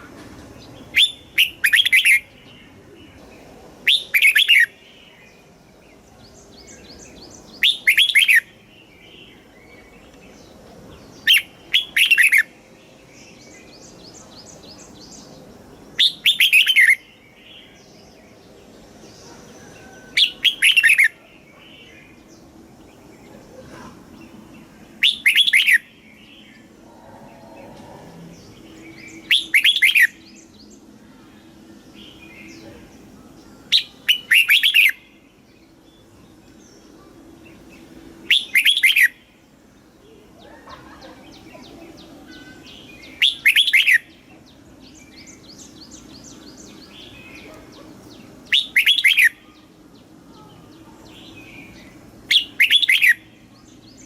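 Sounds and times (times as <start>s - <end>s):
faint bird twittering: 0.0s - 54.0s
bird whistled phrases: 0.9s - 2.2s, 3.8s - 4.7s, 7.6s - 8.4s, 25.0s - 25.8s, 29.2s - 30.2s, 33.7s - 35.0s, 38.3s - 39.2s, 42.3s - 44.0s, 48.5s - 49.6s, 52.3s - 53.2s.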